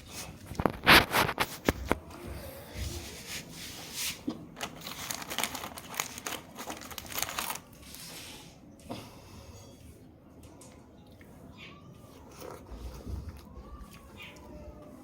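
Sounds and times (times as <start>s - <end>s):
plastic snack packet crinkling: 4.5s - 8.1s.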